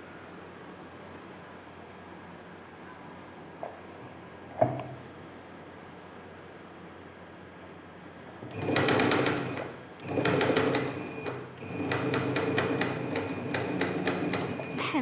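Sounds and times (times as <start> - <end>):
sewing machine needle clattering: 8.4 - 15.0.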